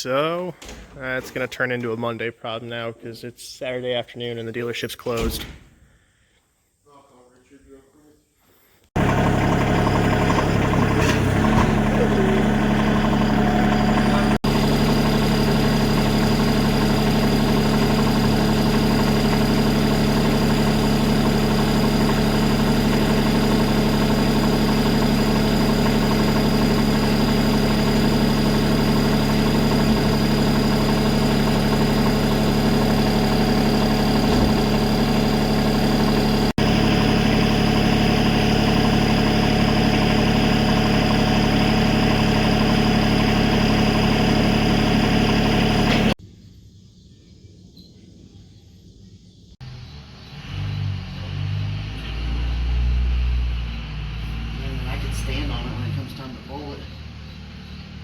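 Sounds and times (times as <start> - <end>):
diesel truck engine idling: 9.0 - 46.2, 49.7 - 58.0.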